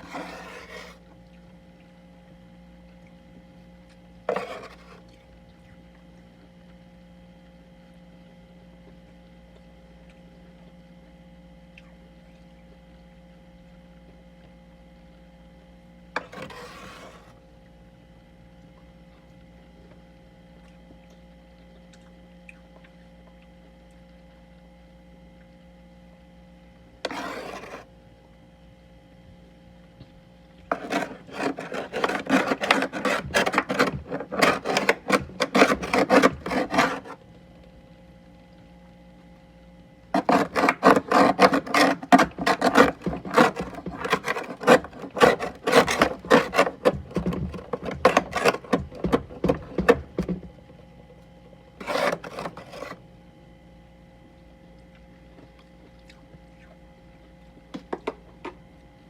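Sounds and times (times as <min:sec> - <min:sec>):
scraping freezer frost: 0:00.0 - 0:01.0, 0:04.3 - 0:05.0, 0:16.2 - 0:17.4, 0:27.0 - 0:27.9, 0:30.7 - 0:37.2, 0:40.2 - 0:50.4, 0:51.8 - 0:53.0.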